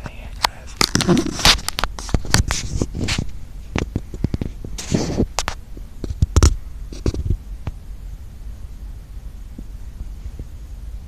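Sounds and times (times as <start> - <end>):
sharp clicks and knocks: 0.0 - 7.8
short rustling noise: 0.6 - 7.5.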